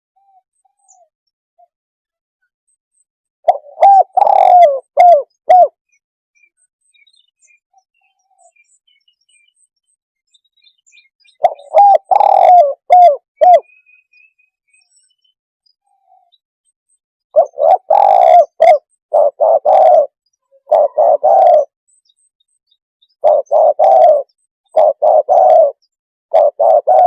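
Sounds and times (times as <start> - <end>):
dove cooing: 3.4 - 5.8, 11.3 - 13.7, 17.4 - 21.8, 23.2 - 27.0.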